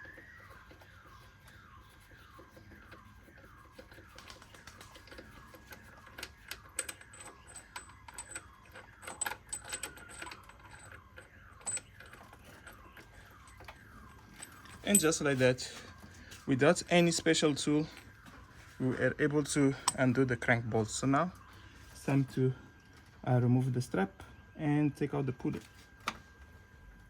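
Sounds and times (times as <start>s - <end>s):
metal tools clicking and clinking: 14.4s - 15.5s.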